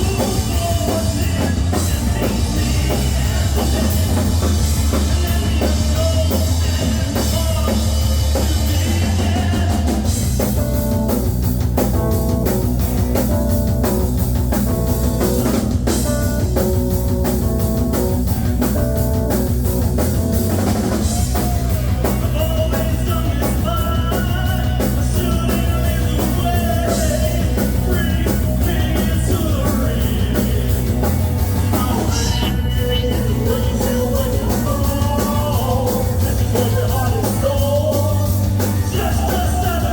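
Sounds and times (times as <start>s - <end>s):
person singing: 0.0s - 11.0s, 21.0s - 39.9s
drum kit beat: 0.0s - 39.9s
rock band playing: 0.0s - 39.9s.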